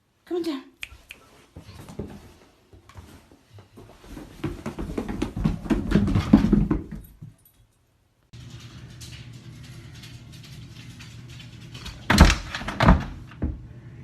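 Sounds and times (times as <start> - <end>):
dog paws on stairs: 1.3 - 7.7.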